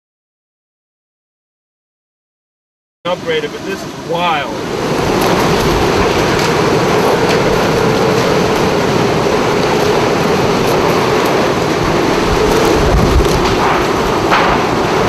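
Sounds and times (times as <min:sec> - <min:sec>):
hurricane wind rushing: 0:03.1 - 0:15.0.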